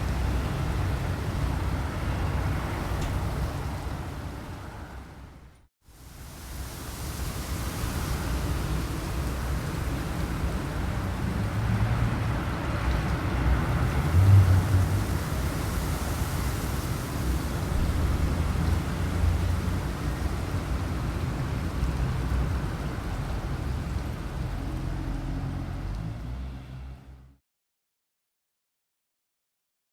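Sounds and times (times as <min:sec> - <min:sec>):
gusty wind blowing: 0:06.2 - 0:24.2.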